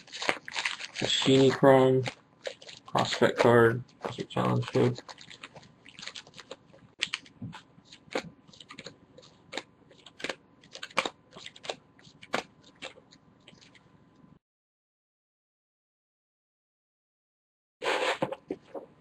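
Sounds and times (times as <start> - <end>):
trading cards clicking and snapping: 0.0 - 8.9, 9.5 - 13.0.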